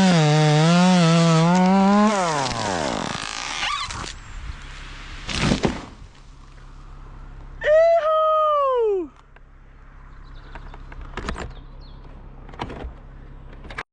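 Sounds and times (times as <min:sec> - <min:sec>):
chainsaw engine revving: 0:00.0 - 0:04.1
short rasping burst: 0:00.0 - 0:04.2.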